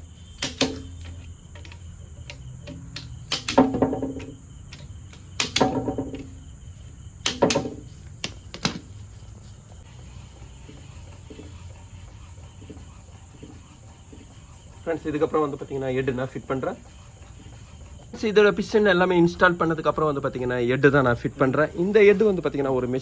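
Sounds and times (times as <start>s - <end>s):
torque wrench clicks: 0.4s - 3.8s, 4.7s - 5.8s.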